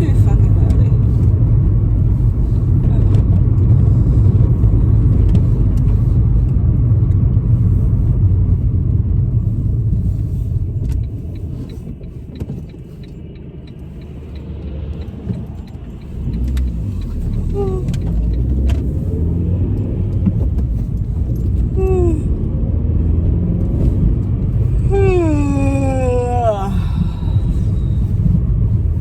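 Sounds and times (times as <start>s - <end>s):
car road noise rumble: 0.0s - 29.0s
light regular ticking: 9.2s - 21.7s.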